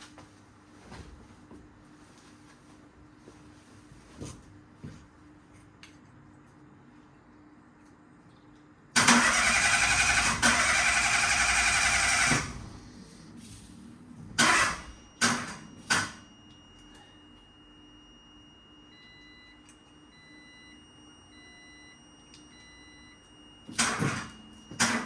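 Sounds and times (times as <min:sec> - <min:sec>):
starter motor cranking: 0:09.0 - 0:12.6.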